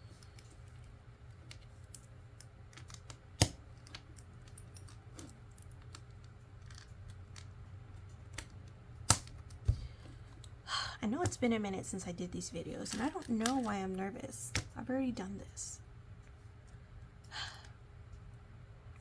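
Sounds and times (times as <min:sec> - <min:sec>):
sharp plastic snap: 0:02.8 - 0:03.6, 0:08.4 - 0:09.6.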